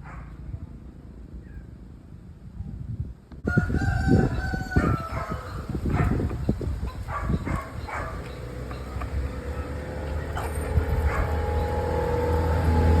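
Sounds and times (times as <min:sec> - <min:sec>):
dog barking: 0:00.0 - 0:00.3, 0:04.7 - 0:11.7
vehicle engine humming: 0:05.0 - 0:13.0.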